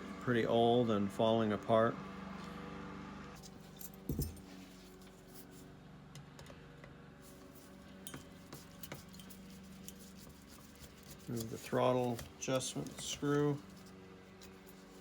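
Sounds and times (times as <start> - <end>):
metal parts clinking: 3.8 - 4.5
knock on workbench: 4.1 - 4.4.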